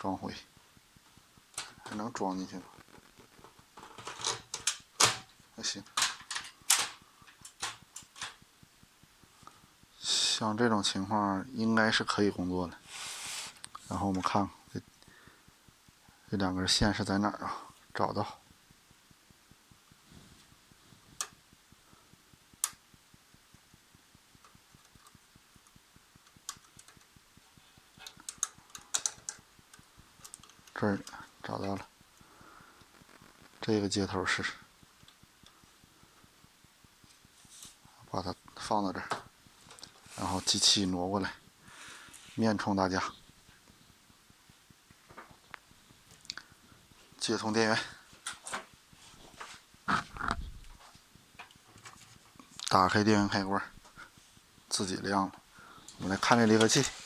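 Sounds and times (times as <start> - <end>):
faint handling clicks and rustles: 0.0 - 57.0
sharp plastic clicks: 5.9 - 8.4, 24.4 - 27.2, 28.0 - 31.2.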